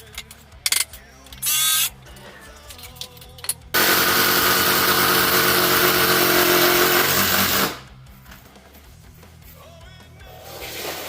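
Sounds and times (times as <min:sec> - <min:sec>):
electric power tool running: 0:03.8 - 0:07.8.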